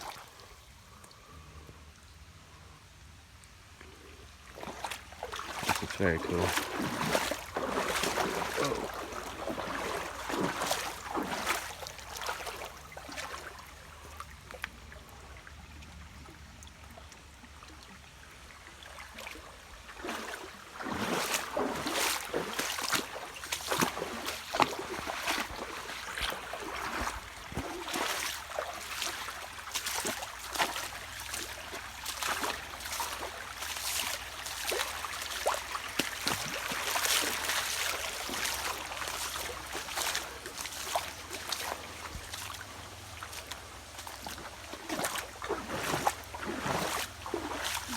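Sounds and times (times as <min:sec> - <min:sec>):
splashes of wading: 0:00.0 - 0:01.5, 0:03.5 - 0:47.9
creek running over rock: 0:00.0 - 0:47.9.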